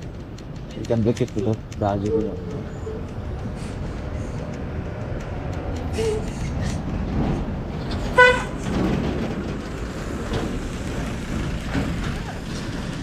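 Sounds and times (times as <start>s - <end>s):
road traffic: 0.0s - 13.0s
vehicle horn toot: 8.2s - 8.6s.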